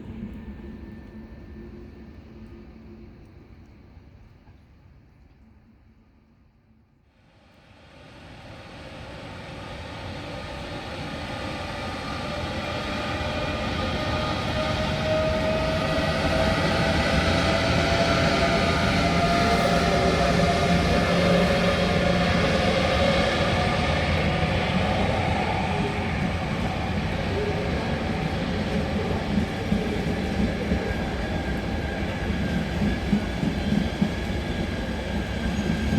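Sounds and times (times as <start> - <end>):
train drive whine: 0.0 - 5.0, 7.3 - 35.9
train running: 0.0 - 5.4, 7.4 - 35.9.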